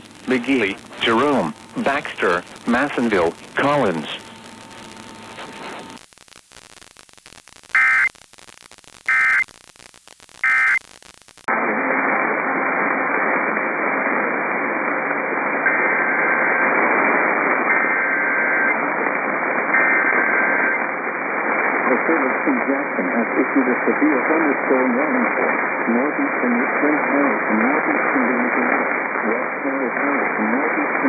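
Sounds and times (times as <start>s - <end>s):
faint header data bursts: 0.0s - 11.4s
weather radio static hiss: 0.0s - 31.0s
emergency alert data bursts: 7.7s - 8.1s, 9.1s - 9.5s, 10.4s - 10.8s.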